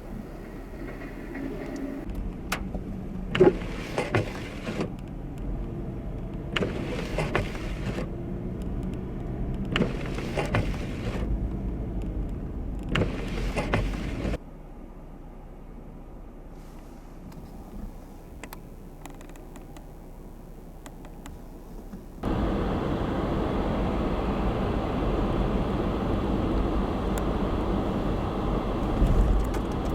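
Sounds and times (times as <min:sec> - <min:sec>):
car road and engine noise: 0:00.0 - 0:29.9
windshield wipers swishing: 0:03.4 - 0:04.9, 0:06.5 - 0:08.1, 0:09.7 - 0:11.3, 0:12.9 - 0:14.4, 0:22.2 - 0:29.9.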